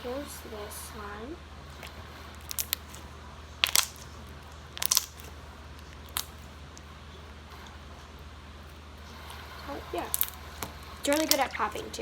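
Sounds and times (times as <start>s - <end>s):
slime popping and clicking: 1.8s - 3.0s, 3.6s - 4.1s, 4.8s - 6.4s, 10.1s - 11.8s.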